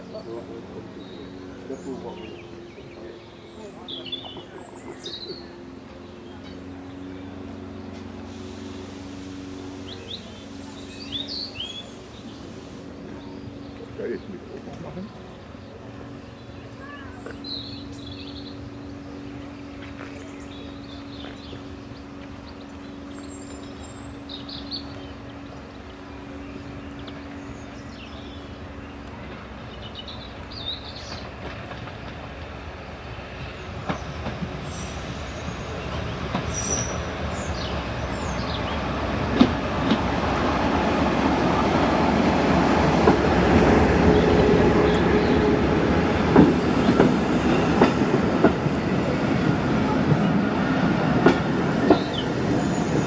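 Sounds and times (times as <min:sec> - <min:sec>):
birds chirping: 0:00.0 - 0:53.0
train passing: 0:00.0 - 0:53.0
wheels clicking over rail joints: 0:33.7 - 0:53.0.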